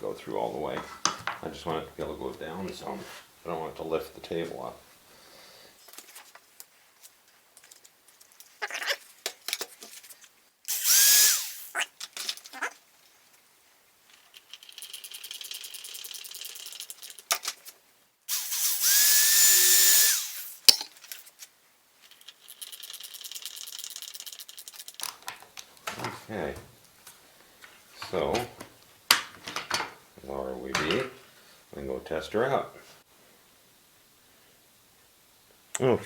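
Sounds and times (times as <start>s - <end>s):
tools and wood knocking: 0.7s - 1.4s, 28.3s - 30.0s
electric drill whining: 10.7s - 11.8s, 18.3s - 20.6s.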